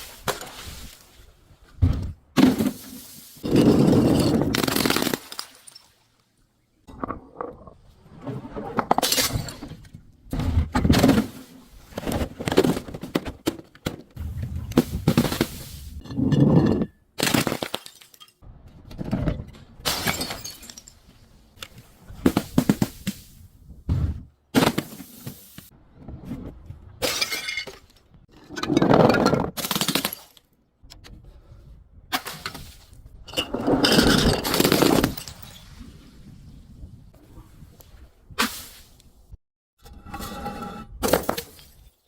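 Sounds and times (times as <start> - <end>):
glass bottles breaking: 19.9 - 21.1, 27.0 - 27.8, 33.8 - 35.7.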